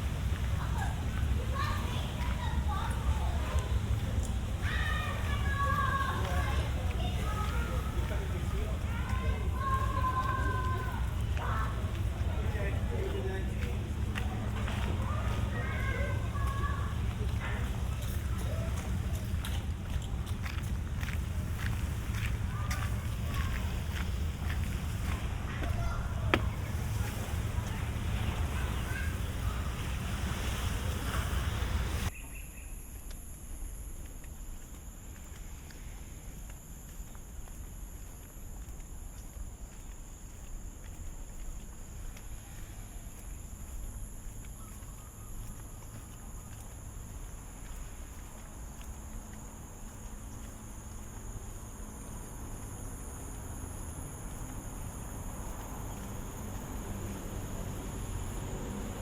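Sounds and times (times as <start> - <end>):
low background rumble: 0.0 - 32.1
insects chirring: 0.1 - 59.0.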